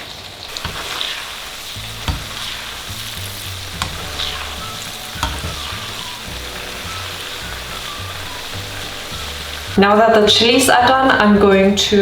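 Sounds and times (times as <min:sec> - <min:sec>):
chillies sizzling in hot oil: 0:00.0 - 0:12.0
utensil clicking against pan: 0:00.5 - 0:09.6.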